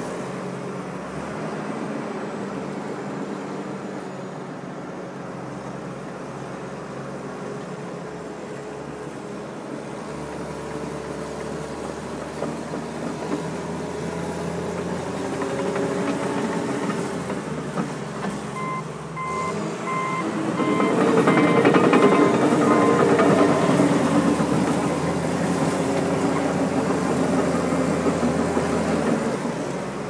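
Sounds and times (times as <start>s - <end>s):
diesel engine running: 6.3s - 30.0s
reversing alarm beeping: 18.6s - 23.8s.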